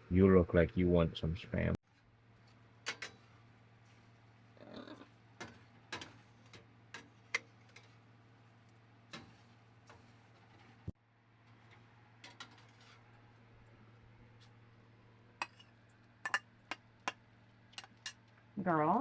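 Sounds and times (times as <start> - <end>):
kitchenware clicks and taps: 16.3 - 17.2, 17.8 - 18.2.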